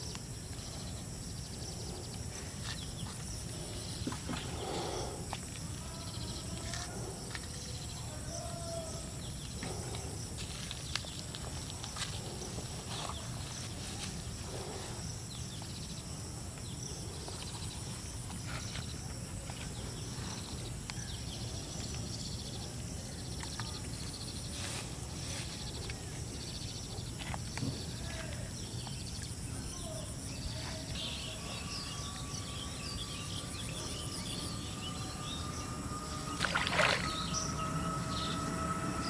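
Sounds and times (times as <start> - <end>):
birds chirping: 0.0 - 39.0
faint steady tone: 28.2 - 39.0
high insect-like trill: 30.2 - 39.0.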